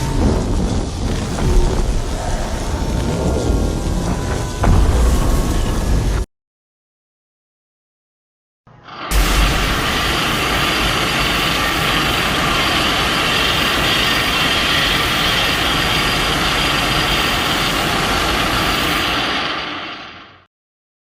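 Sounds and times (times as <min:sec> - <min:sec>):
deep rumble: 0:00.0 - 0:06.3
loud rushing noise: 0:00.0 - 0:06.3, 0:09.1 - 0:20.2.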